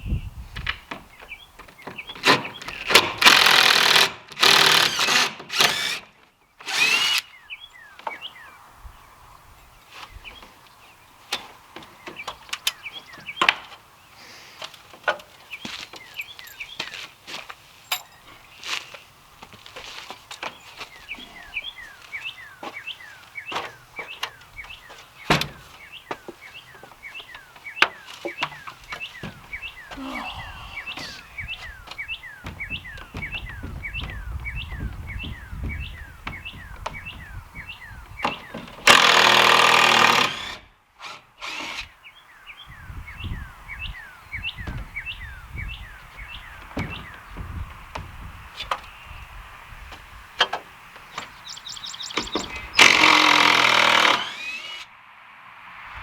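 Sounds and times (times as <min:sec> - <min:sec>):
power tool burst: 0:06.7 - 0:07.3, 0:52.8 - 0:54.9
knocks and clunks on timber: 0:25.2 - 0:27.0, 0:27.8 - 0:30.0, 0:31.0 - 0:37.6, 0:46.5 - 0:48.8.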